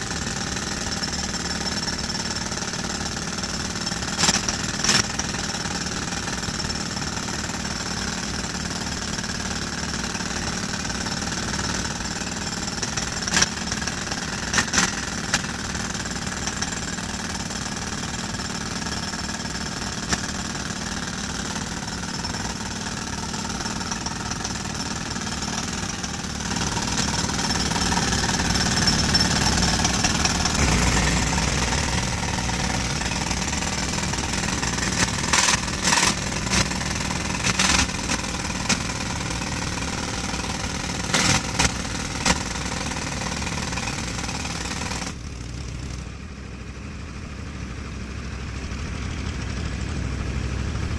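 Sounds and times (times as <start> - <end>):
concrete breaker hammering: 0.0 - 45.8
engine running: 12.8 - 50.9.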